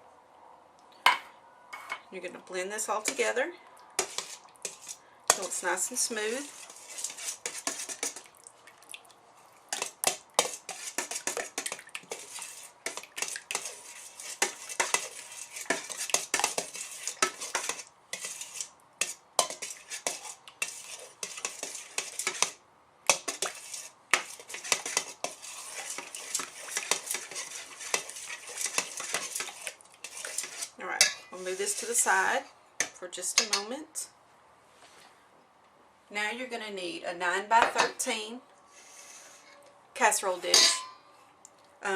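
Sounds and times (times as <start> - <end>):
clinks and scrapes against bowl: 4.0 - 8.3, 9.7 - 32.2, 40.5 - 41.0
utensil stirring in a bowl: 4.0 - 9.0, 9.7 - 33.6.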